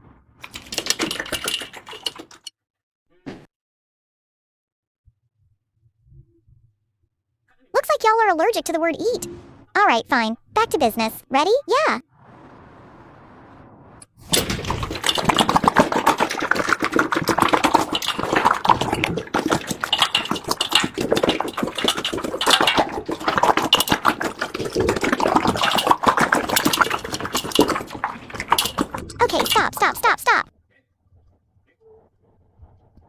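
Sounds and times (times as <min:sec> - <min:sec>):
dogs crunching food: 0:00.4 - 0:02.5, 0:14.2 - 0:30.4.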